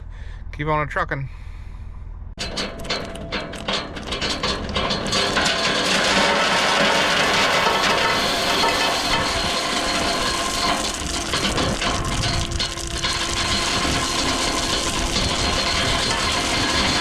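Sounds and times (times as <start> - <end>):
gravel pouring out: 3.5 - 17.0.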